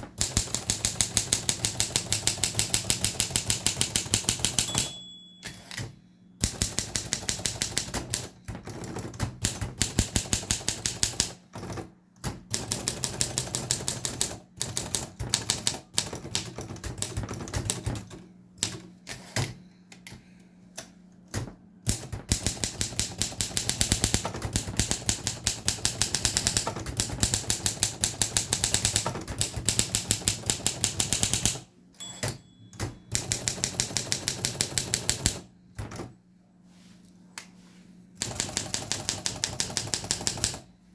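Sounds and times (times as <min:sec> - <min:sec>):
manual typewriter typing: 0:00.0 - 0:19.6, 0:21.3 - 0:36.1, 0:38.2 - 0:40.7
typewriter bell ding: 0:04.3 - 0:05.9, 0:32.0 - 0:33.4.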